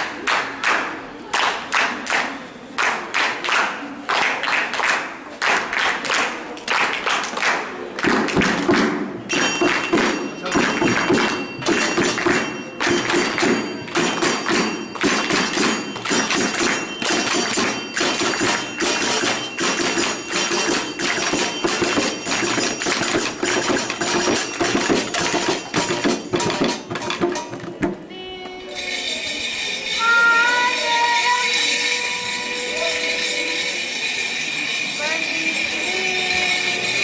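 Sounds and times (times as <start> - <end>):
hand percussion rhythm: 8.0 - 37.0
tambourine-like jingling: 9.3 - 27.5, 28.7 - 37.0.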